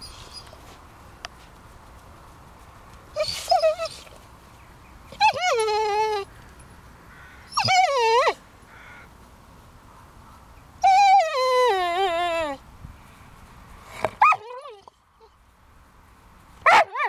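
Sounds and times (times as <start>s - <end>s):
puppy whining: 0.0s - 0.7s, 3.2s - 4.2s, 5.1s - 6.3s, 7.5s - 8.4s, 10.8s - 12.6s, 14.0s - 15.4s.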